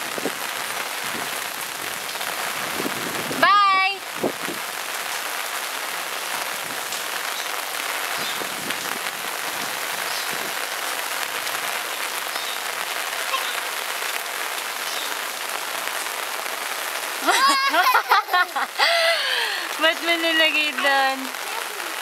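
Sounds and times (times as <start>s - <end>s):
rain pattering on surfaces: 0.0s - 22.0s.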